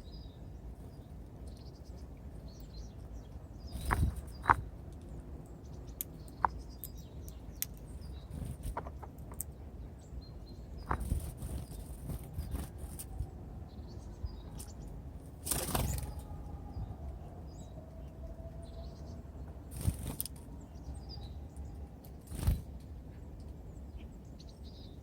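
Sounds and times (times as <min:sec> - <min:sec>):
birds pecking and tapping: 0:03.7 - 0:05.2, 0:05.9 - 0:09.6, 0:10.8 - 0:13.1, 0:15.4 - 0:16.2, 0:19.7 - 0:20.4
flurry of wingbeats: 0:15.4 - 0:16.2, 0:19.7 - 0:20.3, 0:22.3 - 0:22.7.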